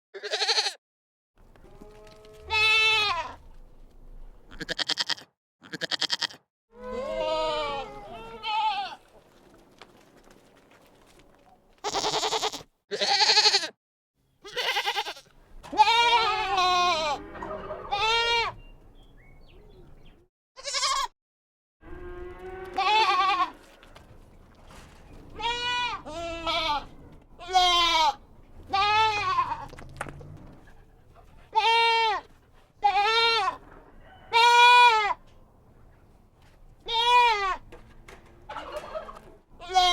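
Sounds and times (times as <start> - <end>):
goat scream-like cries: 0.2 - 0.8, 2.0 - 3.4, 4.6 - 9.0, 11.8 - 13.8, 14.4 - 18.6, 20.6 - 21.2, 22.7 - 23.7, 25.4 - 29.7, 31.5 - 33.6, 34.3 - 35.2, 36.9 - 37.6, 39.6 - 39.9
goats bleating: 0.2 - 0.8, 1.6 - 3.4, 4.5 - 9.1, 11.8 - 13.7, 14.4 - 18.6, 20.6 - 21.1, 22.6 - 23.9, 25.4 - 29.9, 31.5 - 33.6, 34.3 - 35.2, 36.8 - 37.6, 38.5 - 39.9.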